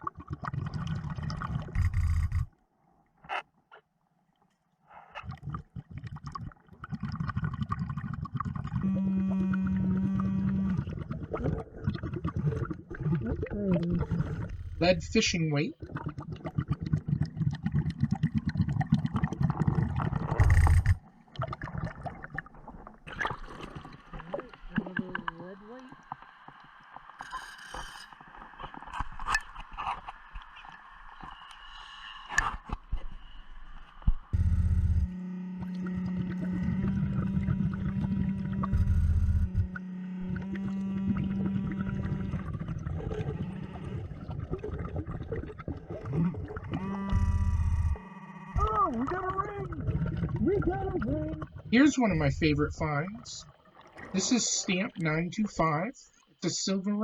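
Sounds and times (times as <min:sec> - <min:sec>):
bubbles crackling and popping: 0:00.0 - 0:02.5, 0:05.2 - 0:27.2, 0:34.0 - 0:56.2
gush of exhaled bubbles: 0:00.0 - 0:02.5, 0:05.2 - 0:08.9, 0:09.7 - 0:14.9, 0:15.8 - 0:25.3, 0:40.3 - 0:48.0, 0:48.6 - 0:51.8
underwater low hum: 0:00.0 - 0:56.8
pulsing low rumble: 0:13.6 - 0:15.4, 0:34.2 - 0:44.2, 0:46.2 - 0:53.0.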